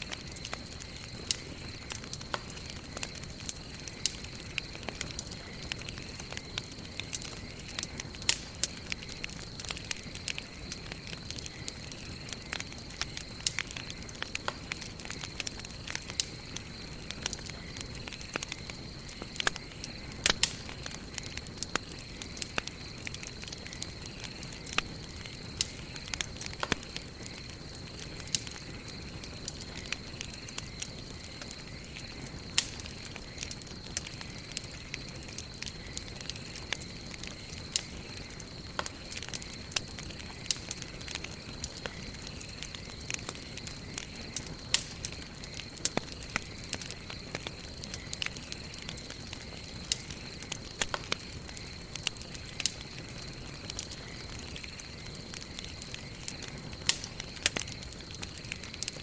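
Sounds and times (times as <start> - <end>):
campfire crackling and popping: 0.0 - 59.0.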